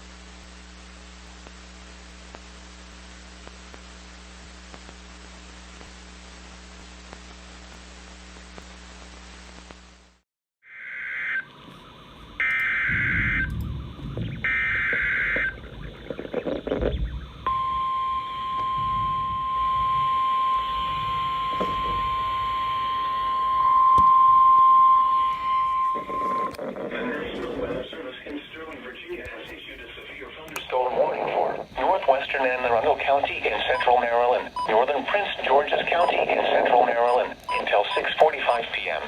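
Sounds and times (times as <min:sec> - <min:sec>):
radio static with low hum: 0:00.0 - 0:10.2, 0:11.1 - 0:39.0
steady warning alarm tone: 0:10.8 - 0:27.8, 0:31.8 - 0:38.8
digital data tone bursts: 0:11.2 - 0:26.6, 0:32.3 - 0:38.8.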